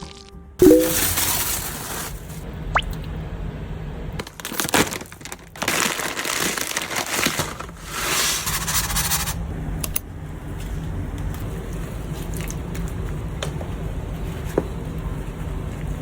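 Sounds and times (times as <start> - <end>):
food crinkling and crunching: 0.8 - 2.4, 4.2 - 8.7, 10.5 - 15.9.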